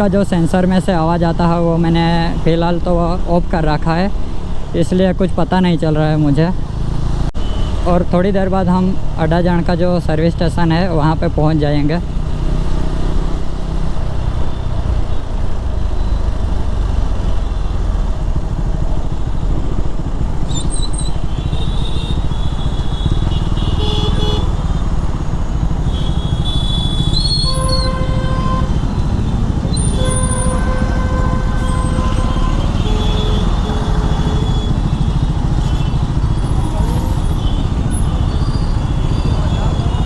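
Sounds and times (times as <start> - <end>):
motorcycle engine running: 12.0 - 40.0
wind rumble on microphone: 16.5 - 22.2
vehicle horn: 21.3 - 24.6, 25.8 - 40.0.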